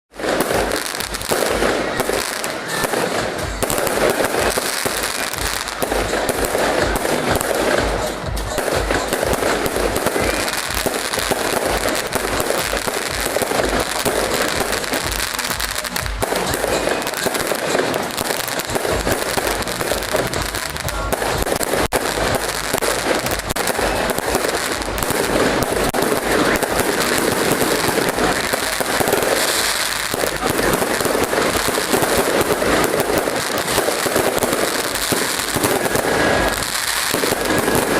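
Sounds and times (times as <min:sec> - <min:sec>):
fireworks bangs and crackling: 0:00.1 - 0:37.9.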